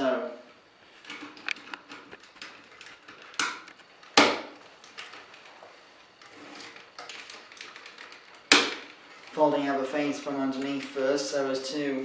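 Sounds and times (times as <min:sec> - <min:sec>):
plastic toy parts clicking: 0:01.1 - 0:05.5, 0:06.6 - 0:09.0.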